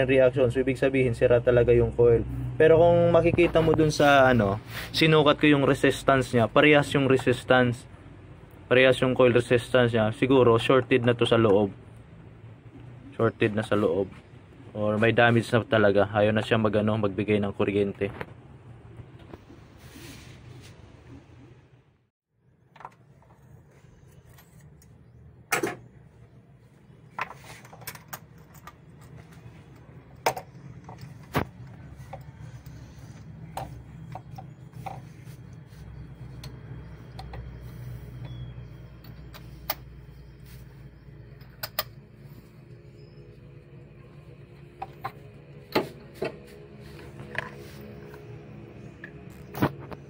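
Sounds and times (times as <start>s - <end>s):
steady low hum: 23.5s - 50.0s.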